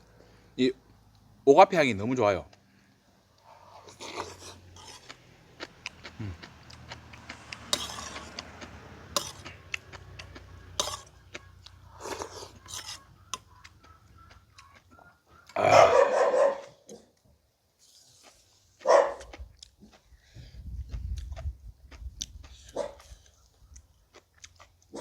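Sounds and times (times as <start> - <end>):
chewing and slurping: 3.3 - 15.9, 17.8 - 25.0.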